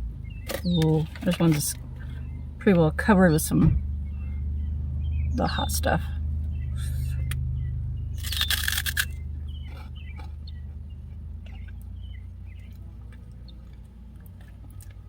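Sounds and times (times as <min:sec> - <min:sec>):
low steady hum: 0:00.0 - 0:15.0
crunchy bite and chewing: 0:08.2 - 0:10.4.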